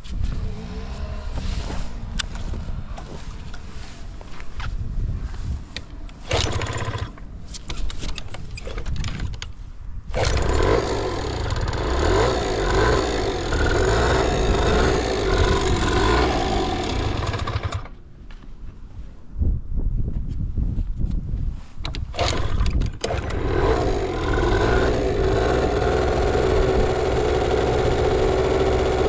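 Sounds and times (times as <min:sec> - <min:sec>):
small two-stroke engine running: 0:06.2 - 0:07.2, 0:10.1 - 0:18.0, 0:22.1 - 0:29.0.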